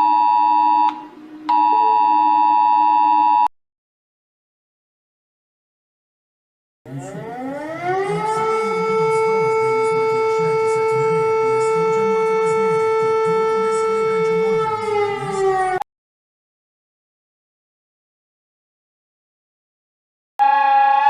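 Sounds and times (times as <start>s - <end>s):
civil defense siren: 6.9s - 15.8s, 20.4s - 21.0s.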